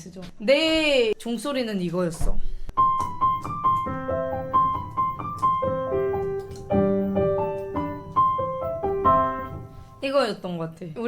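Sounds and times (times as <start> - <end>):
piano melody over bass chords: 2.8 - 10.0.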